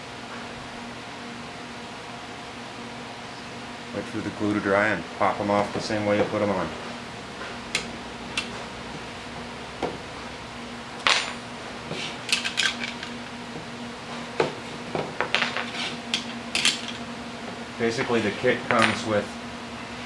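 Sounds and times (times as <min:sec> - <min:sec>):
metal clamps clinking: 0:18.7 - 0:19.3.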